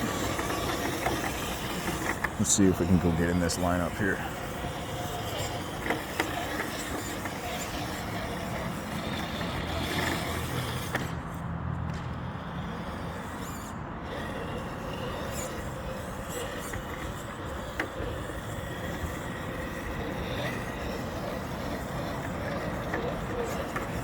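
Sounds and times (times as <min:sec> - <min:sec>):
road traffic rumble: 0:00.0 - 0:24.0.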